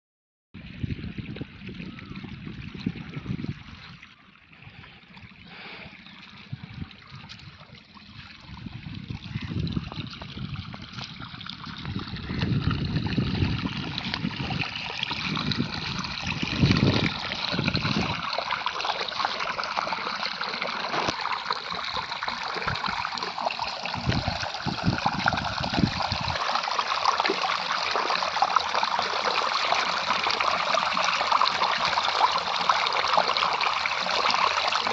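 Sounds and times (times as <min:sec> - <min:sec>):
water trickling: 0:00.6 - 0:34.9.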